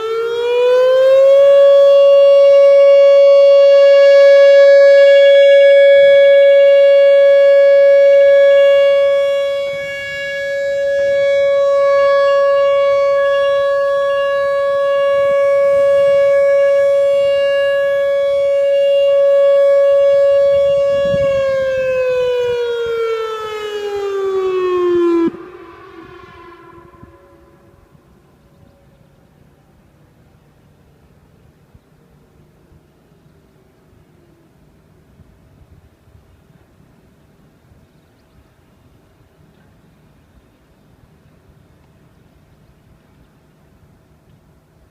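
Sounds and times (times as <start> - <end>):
tornado warning siren: 0.0 - 31.6.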